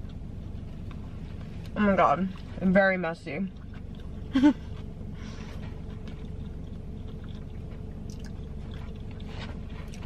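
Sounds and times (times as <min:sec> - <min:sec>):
person chewing food: 0:00.0 - 0:02.6, 0:03.3 - 0:10.0
low background hum: 0:00.0 - 0:10.0
wet mouth clicks: 0:05.9 - 0:09.3.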